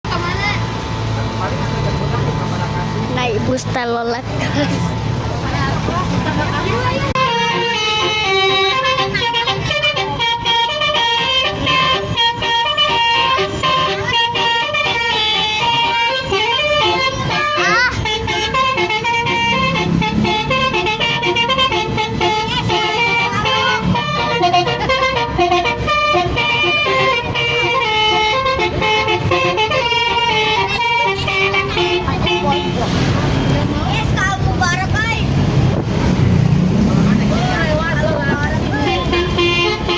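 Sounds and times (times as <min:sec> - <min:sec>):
bus musical horn melody: 0:06.1 - 0:34.1, 0:37.8 - 0:39.9.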